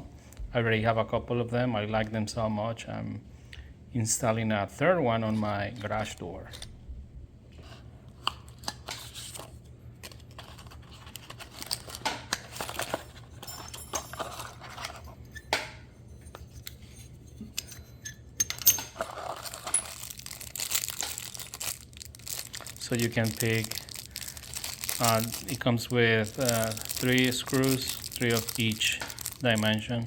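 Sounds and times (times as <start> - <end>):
plastic packaging rustling: 8.6 - 15.3, 18.9 - 30.0
small metal pieces clinking: 12.5 - 15.6, 16.2 - 29.8.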